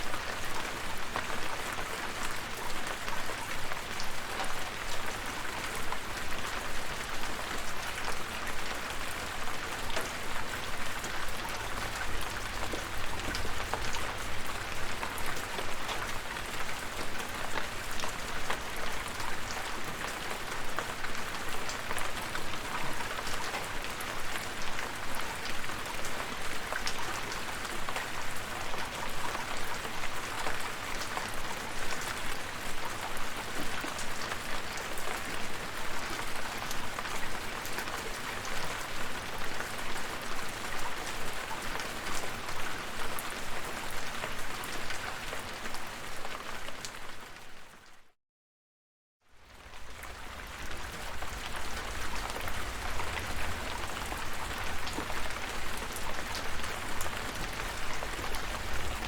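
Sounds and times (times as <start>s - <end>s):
steady rain hiss: 49.6s - 59.0s.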